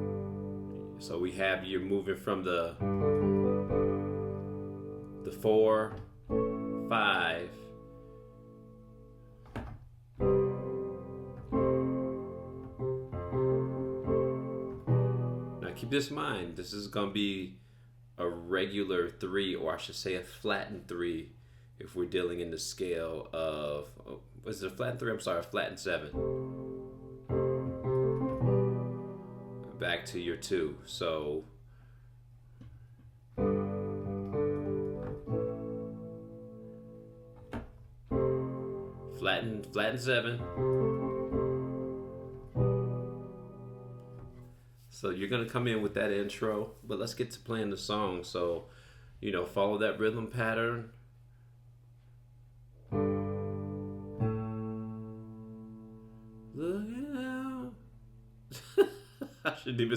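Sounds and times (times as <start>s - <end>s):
piano chords: 0.0s - 16.5s, 25.9s - 30.8s, 33.3s - 44.6s, 52.8s - 57.7s.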